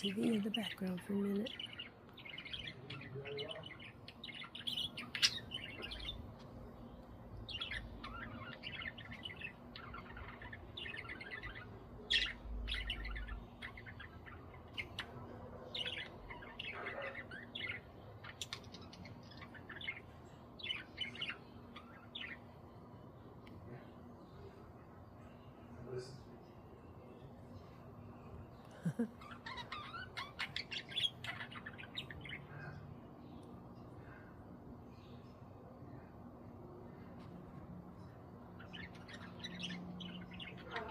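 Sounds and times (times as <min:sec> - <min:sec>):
budgerigars chirping: 0:00.0 - 0:22.5, 0:29.1 - 0:32.5, 0:38.1 - 0:40.9.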